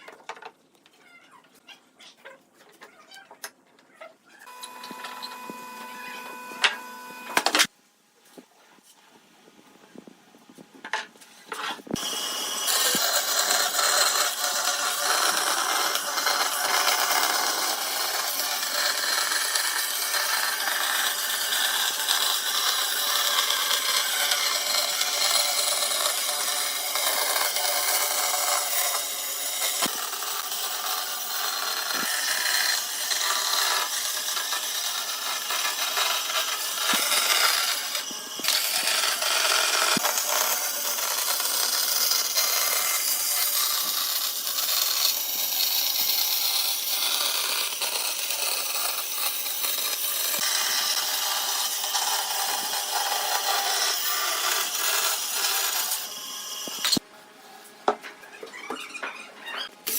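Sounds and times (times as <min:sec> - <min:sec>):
woodworking tools rasping wood: 0:11.6 - 0:57.0.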